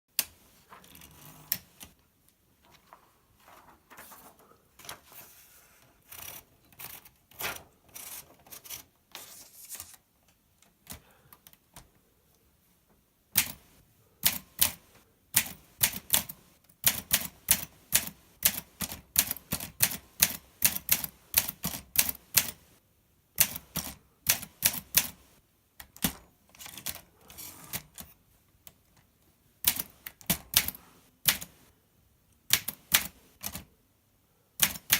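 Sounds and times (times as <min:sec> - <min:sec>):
typewriter keystroke clacks: 0:13.4 - 0:14.8, 0:15.4 - 0:22.6, 0:29.6 - 0:31.6, 0:32.5 - 0:33.7, 0:34.6 - 0:34.9.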